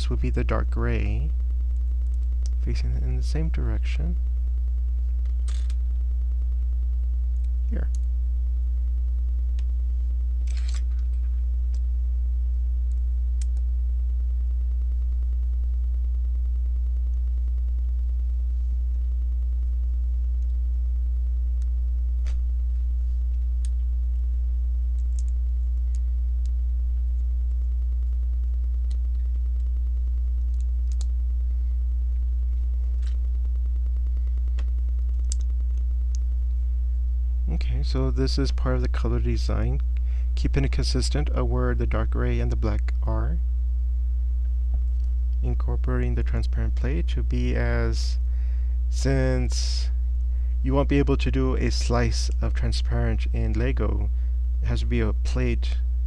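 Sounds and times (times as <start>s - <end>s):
faint steady tones: 0.0s - 56.0s
low electrical hum: 0.0s - 56.0s.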